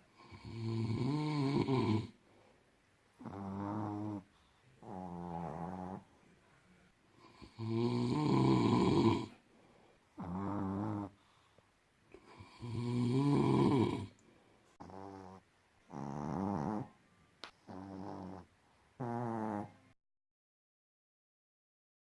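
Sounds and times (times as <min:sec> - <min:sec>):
snoring: 0:00.1 - 0:02.2, 0:03.2 - 0:06.1, 0:07.2 - 0:09.4, 0:10.2 - 0:11.2, 0:12.2 - 0:14.2, 0:14.8 - 0:17.0, 0:17.6 - 0:19.9.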